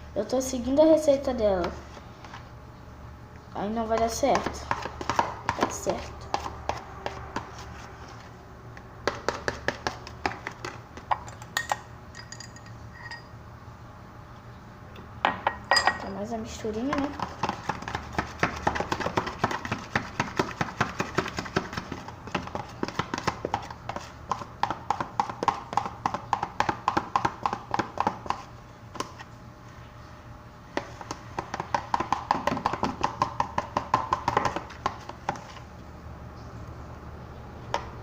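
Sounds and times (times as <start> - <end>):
utensil stirring slime in a cup: 3.7 - 8.3, 16.5 - 29.3, 30.7 - 35.7.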